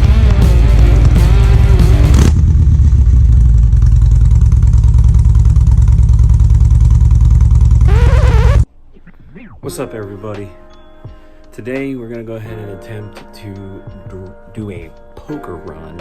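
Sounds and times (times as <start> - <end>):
motorcycle engine running: 0.0 - 8.6
wavering pitched sound: 7.9 - 8.6.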